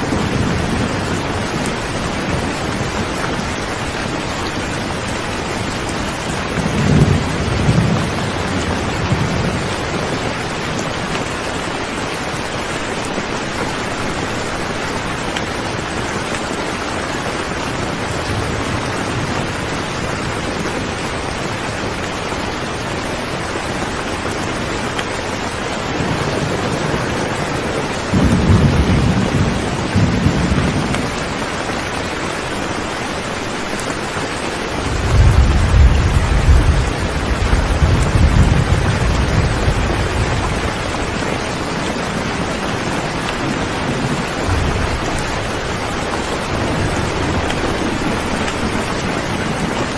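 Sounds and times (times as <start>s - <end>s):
thunder rumbling: 0.0s - 12.3s, 25.9s - 31.8s, 34.7s - 49.9s
rain hissing: 0.0s - 49.9s.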